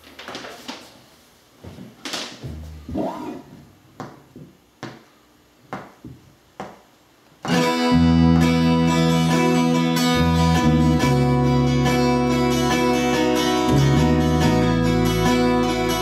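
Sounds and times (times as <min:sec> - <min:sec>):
low bass notes: 0:02.4 - 0:03.8, 0:07.5 - 0:16.0
strummed acoustic guitar: 0:07.5 - 0:16.0.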